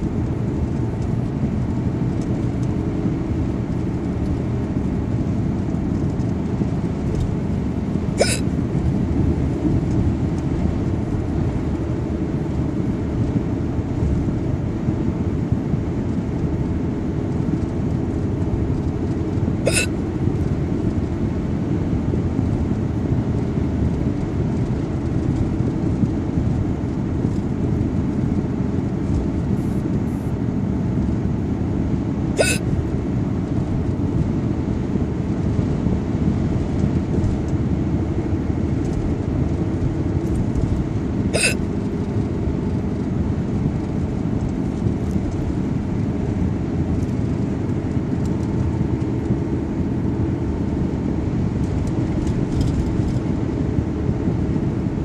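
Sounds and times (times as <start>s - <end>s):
steady low rumble: 0.0s - 55.0s
person hiccuping: 8.2s - 8.6s, 19.6s - 20.0s, 32.4s - 32.7s, 41.3s - 41.6s.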